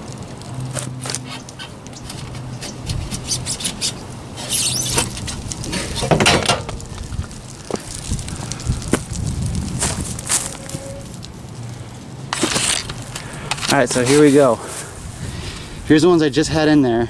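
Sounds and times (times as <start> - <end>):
metal tools clicking and scraping: 0.8 - 6.8, 12.3 - 14.2.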